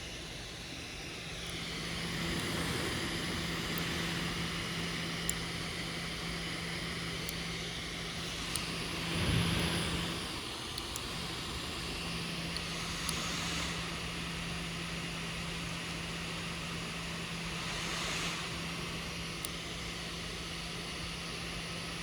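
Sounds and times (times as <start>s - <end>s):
laptop cooling fan whirring: 0.0s - 22.0s
faint sharp clicks: 4.9s - 5.5s.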